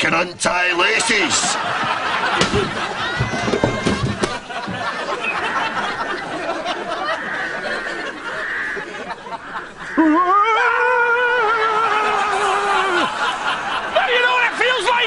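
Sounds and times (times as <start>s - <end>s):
long wavering vocal cry: 10.0s - 13.2s.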